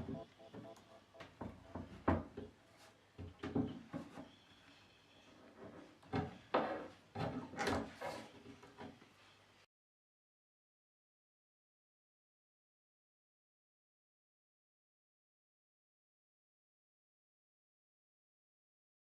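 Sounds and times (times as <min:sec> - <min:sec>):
wooden knocks and scrapes: 0:00.0 - 0:04.4, 0:05.3 - 0:09.0.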